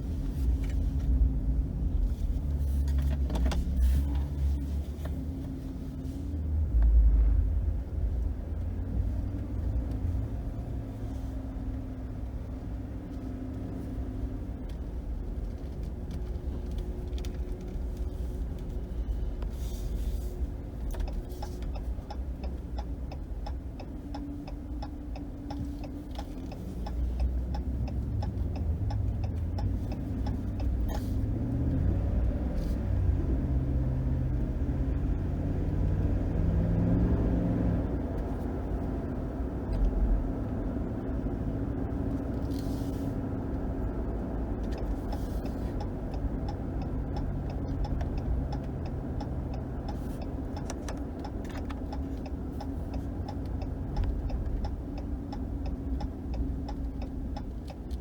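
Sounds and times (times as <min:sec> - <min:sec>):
road noise: 0:00.0 - 0:58.0
light ticking: 0:20.4 - 0:31.4, 0:44.5 - 0:58.0.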